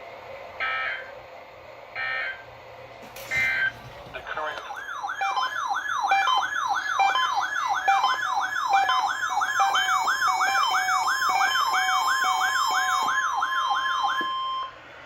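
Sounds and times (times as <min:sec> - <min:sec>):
steady alarm tone: 0:04.7 - 0:14.8
yelping siren alarm: 0:04.7 - 0:14.8.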